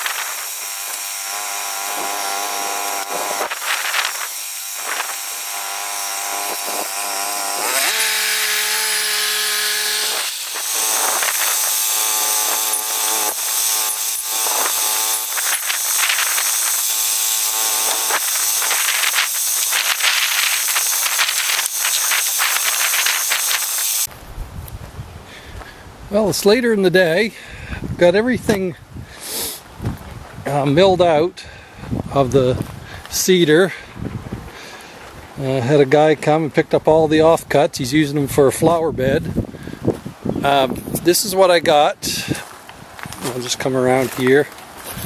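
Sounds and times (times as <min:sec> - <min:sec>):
bandsaw sawmill cutting log: 0:00.0 - 0:24.1.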